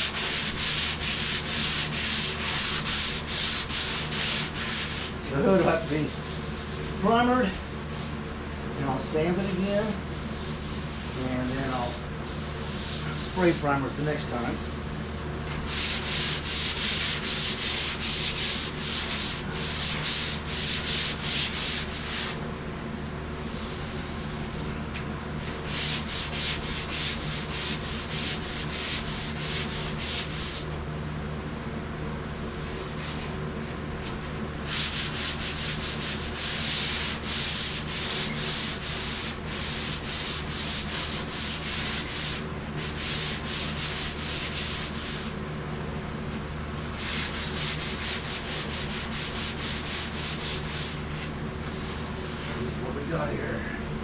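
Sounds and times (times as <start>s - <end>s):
hand sanding with sandpaper: 0.0s - 22.4s, 23.4s - 33.4s, 34.0s - 45.4s, 46.8s - 52.8s
steady low hum: 0.0s - 54.0s.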